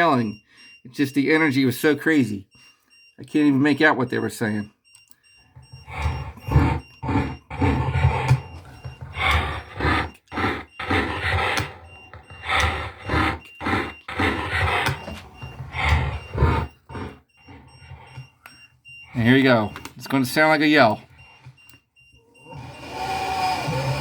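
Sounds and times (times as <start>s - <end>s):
muffled distorted man's voice: 0.0s - 2.5s, 3.2s - 4.7s, 19.2s - 21.0s.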